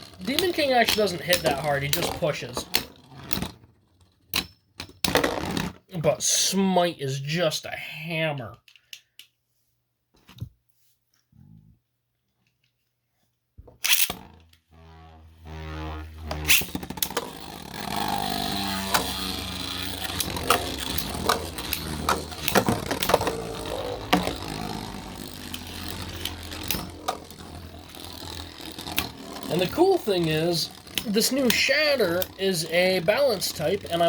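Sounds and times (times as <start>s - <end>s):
spinning tops colliding: 0.0s - 3.5s, 13.8s - 34.0s
brief whir: 0.0s - 3.6s, 13.8s - 34.0s
spinning top launch: 0.0s - 4.4s, 13.8s - 34.0s.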